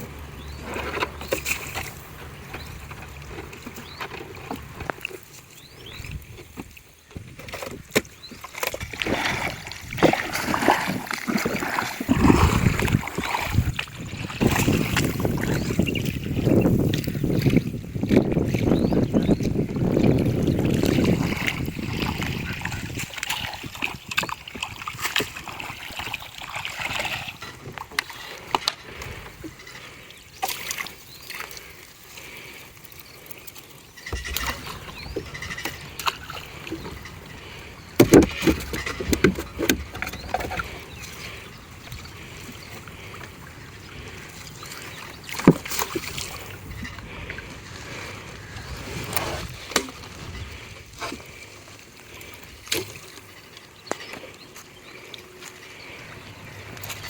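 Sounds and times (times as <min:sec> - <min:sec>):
low water wash: 0:00.0 - 0:57.0
water splashes: 0:00.0 - 0:57.0
boat knocks: 0:34.1 - 0:37.3, 0:38.0 - 0:40.8.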